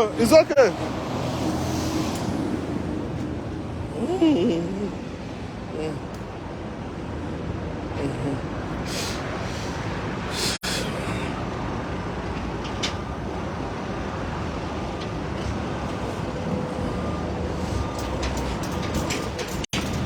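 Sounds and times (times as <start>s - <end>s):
traffic noise: 0.0s - 20.0s
heavy vehicle engine running: 5.0s - 20.0s.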